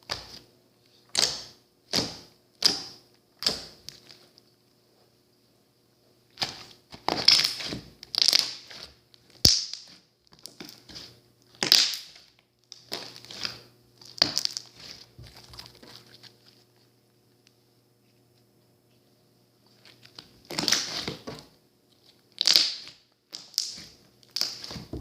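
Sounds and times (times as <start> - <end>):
slime squishing by hand: 6.3 - 16.9, 19.7 - 25.0.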